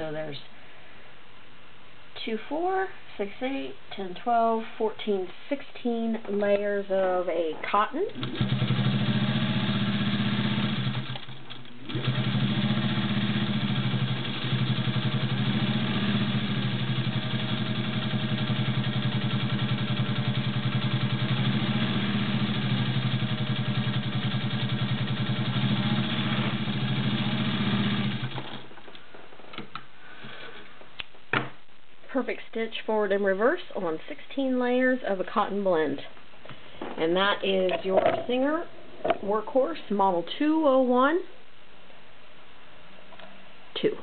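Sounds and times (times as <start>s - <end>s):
sewing machine running: 8.2s - 28.6s.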